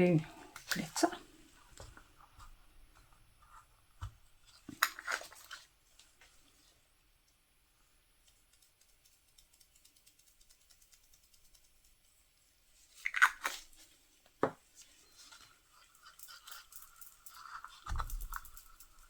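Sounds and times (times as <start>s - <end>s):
glitter container rattling rustle: 4.4s - 6.7s, 8.6s - 19.0s.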